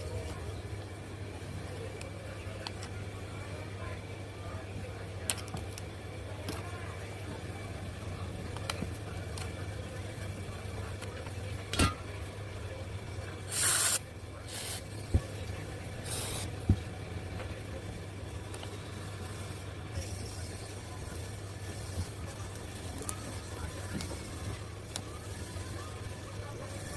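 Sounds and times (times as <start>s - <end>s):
steady low hum: 0.0s - 26.9s
sprayed air hisses: 13.5s - 14.8s, 16.0s - 16.5s.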